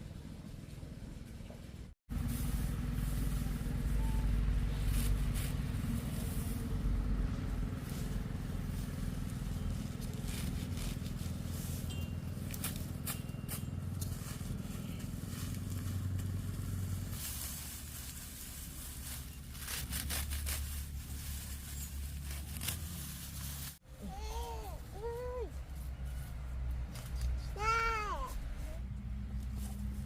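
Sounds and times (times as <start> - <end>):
small motorbike engine running: 2.1 - 23.7.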